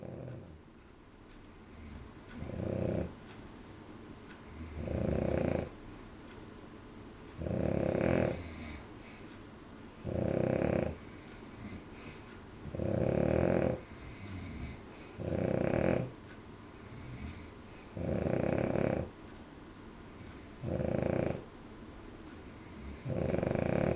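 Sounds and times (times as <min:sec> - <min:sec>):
dog snoring: 0:00.0 - 0:00.6, 0:01.7 - 0:03.2, 0:04.5 - 0:05.8, 0:07.2 - 0:09.2, 0:09.8 - 0:11.0, 0:11.6 - 0:16.2, 0:16.9 - 0:19.1, 0:20.3 - 0:21.5, 0:22.7 - 0:23.9
dog breathing: 0:01.6 - 0:03.2, 0:04.4 - 0:05.8, 0:07.2 - 0:16.1, 0:16.8 - 0:19.1, 0:20.2 - 0:21.5, 0:22.5 - 0:23.9.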